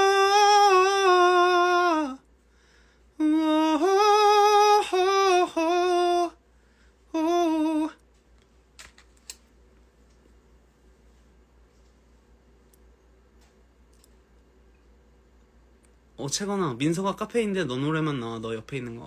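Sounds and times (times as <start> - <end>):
man singing a cappella: 0.0 - 2.3, 3.2 - 6.4, 7.1 - 8.0.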